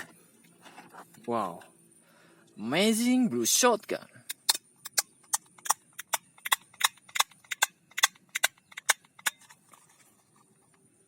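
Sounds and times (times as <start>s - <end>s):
plastic toy gun clicking: 4.3s - 9.5s.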